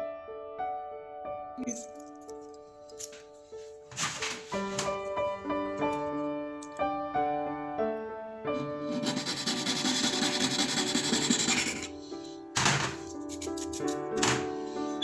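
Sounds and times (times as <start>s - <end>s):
keyboard background music: 1.5s - 15.0s
scratchy rubbing noise: 3.9s - 5.0s, 8.6s - 15.0s.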